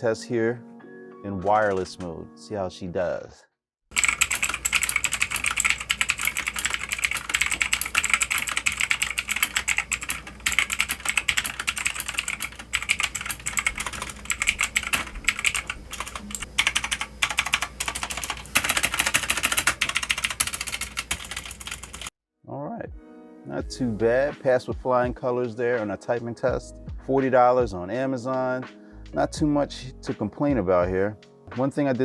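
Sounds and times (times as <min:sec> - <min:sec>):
mechanical keyboard clicking: 0:03.9 - 0:22.1.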